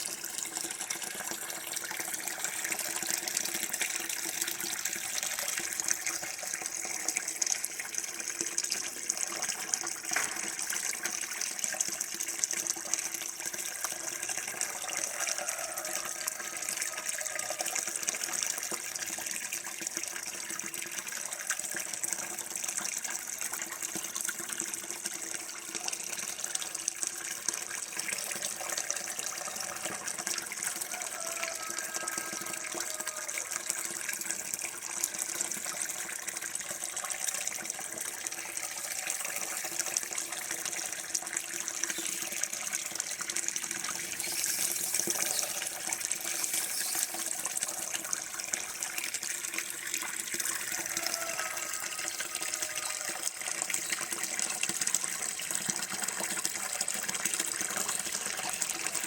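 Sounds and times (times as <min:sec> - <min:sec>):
running water rushing: 0:28.1 - 0:54.0.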